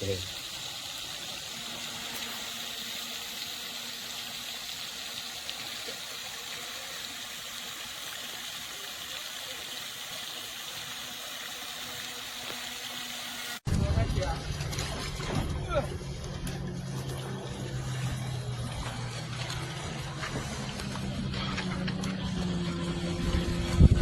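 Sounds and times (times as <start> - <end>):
watery hiss: 0.0 - 13.6.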